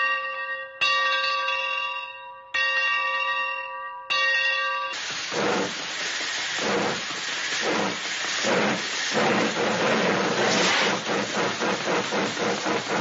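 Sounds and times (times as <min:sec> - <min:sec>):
loud rushing hiss: 0:05.0 - 0:13.0.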